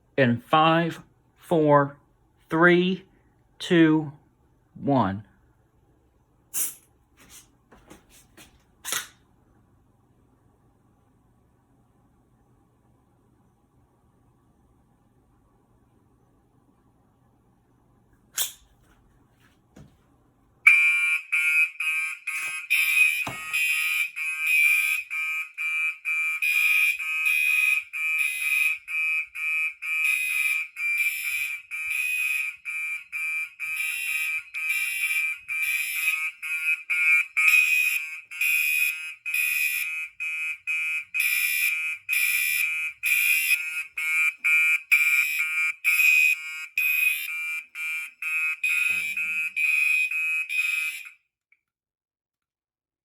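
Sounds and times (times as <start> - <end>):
pulsing fire alarm tone: 20.7 - 51.2.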